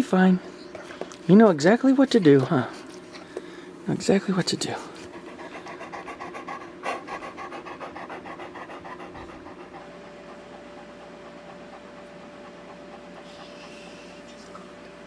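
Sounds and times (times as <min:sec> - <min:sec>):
dog panting: 0:04.0 - 0:15.0.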